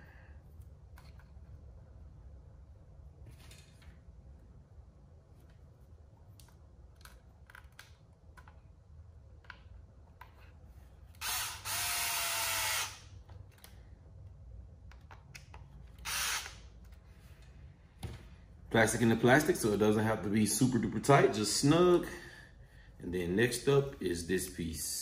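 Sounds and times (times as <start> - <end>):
power driver whirring: 11.1 - 13.1, 16.0 - 16.7.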